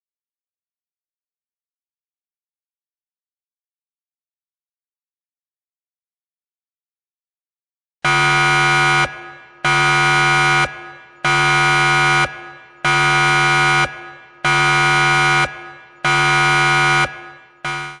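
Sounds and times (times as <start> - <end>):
alarm clock buzzer beeping: 8.1 - 18.0.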